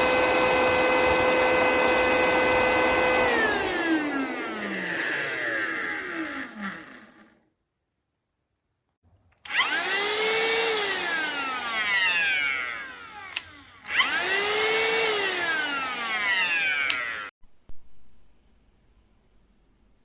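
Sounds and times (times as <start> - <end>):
handheld vacuum cleaner motor whine: 0.0 - 7.4, 9.4 - 17.4.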